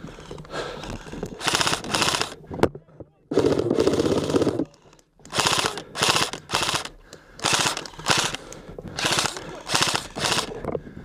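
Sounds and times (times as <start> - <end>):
airsoft rifle bursts: 1.4 - 2.4, 3.3 - 10.6.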